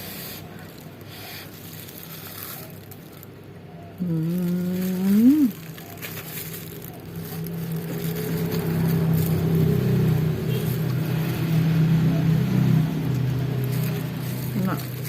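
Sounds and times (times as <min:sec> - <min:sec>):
vehicle engine running: 0:04.1 - 0:15.0.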